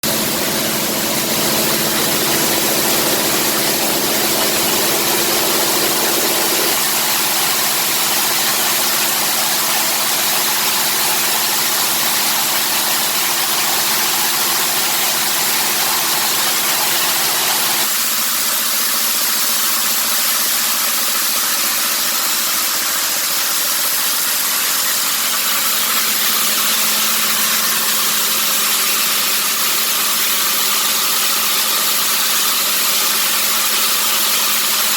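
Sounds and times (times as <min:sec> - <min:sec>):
motor hum: 0:00.0 - 0:17.9.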